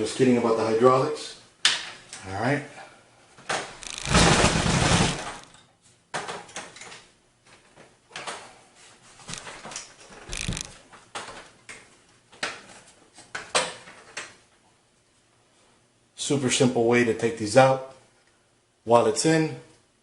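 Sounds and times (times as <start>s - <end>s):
plastic parts clicking and knocking: 3.5s - 7.0s, 9.3s - 11.8s.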